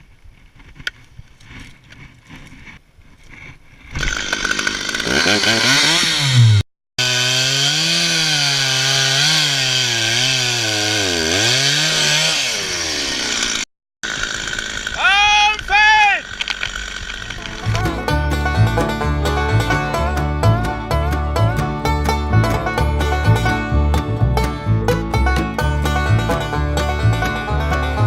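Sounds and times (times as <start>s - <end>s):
chainsaw revving: 4.0s - 23.6s.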